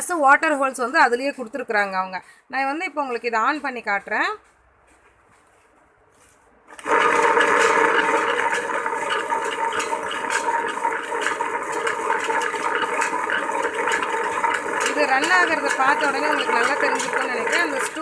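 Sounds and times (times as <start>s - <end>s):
wet grinder whirring and rattling: 6.7s - 18.0s.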